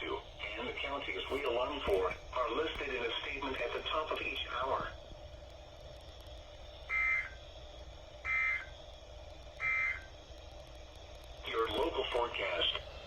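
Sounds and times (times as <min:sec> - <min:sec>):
low steady hum: 0:00.0 - 0:13.0
buzzy two-tone data bursts: 0:06.9 - 0:07.4, 0:08.2 - 0:08.7, 0:09.6 - 0:10.1.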